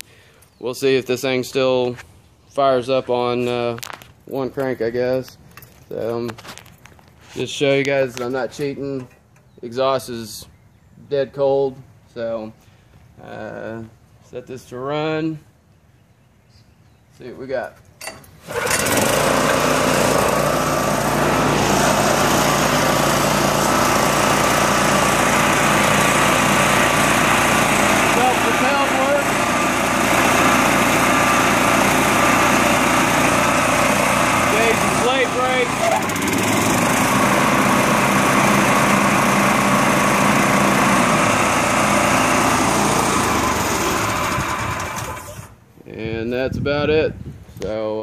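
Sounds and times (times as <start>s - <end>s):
lawn mower engine running: 18.0s - 45.6s.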